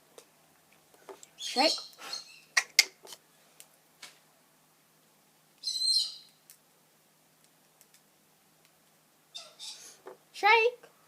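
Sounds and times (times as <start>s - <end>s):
budgerigar warbling chirp: 5.6s - 6.3s, 9.3s - 9.9s
faint clicks: 7.4s - 8.8s.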